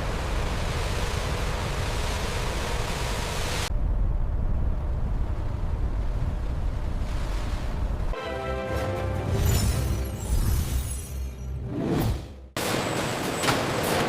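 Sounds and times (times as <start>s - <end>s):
low rumble: 0.0s - 8.2s.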